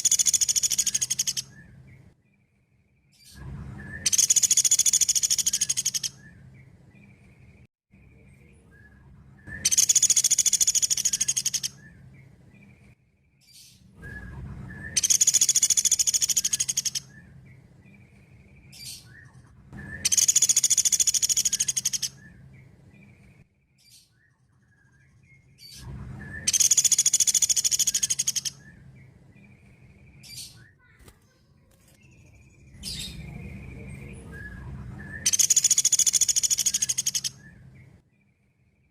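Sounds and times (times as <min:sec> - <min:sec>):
woodpecker rattling trills: 0:00.0 - 0:01.6, 0:04.0 - 0:06.2, 0:09.6 - 0:11.9, 0:15.0 - 0:17.2, 0:20.0 - 0:22.3, 0:26.4 - 0:28.7, 0:35.2 - 0:37.4.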